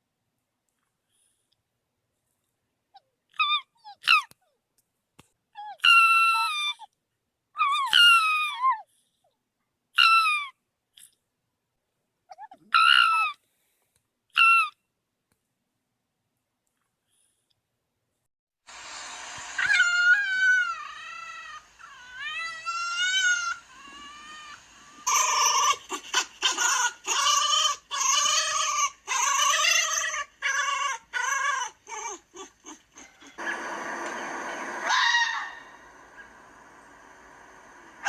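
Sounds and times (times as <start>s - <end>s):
fox whining cries: 3.3s - 4.3s, 5.6s - 6.9s, 7.6s - 8.8s, 10.0s - 10.5s, 12.3s - 13.4s, 19.6s - 33.6s, 34.7s - 36.3s
fox yelping barks: 5.6s - 6.8s, 7.6s - 8.7s, 10.0s - 10.5s, 12.3s - 13.4s, 14.3s - 14.8s, 19.6s - 33.7s, 34.7s - 36.4s
fox harsh scream: 19.5s - 36.6s.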